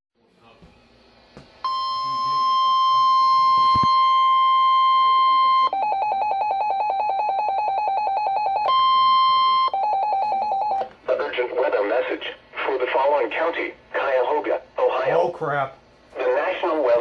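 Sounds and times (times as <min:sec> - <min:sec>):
weather alert tone: 0:01.6 - 0:10.8.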